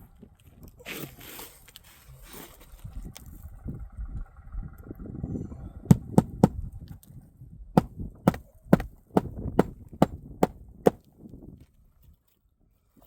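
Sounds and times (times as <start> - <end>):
hammer driving nails: 5.9 - 6.5, 8.3 - 10.2.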